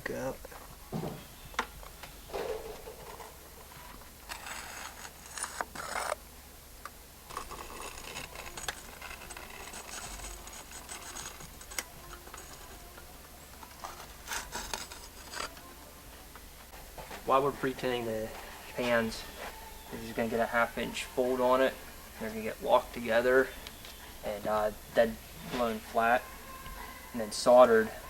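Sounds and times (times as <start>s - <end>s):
metal scraping: 0.9s - 6.2s, 7.3s - 15.7s.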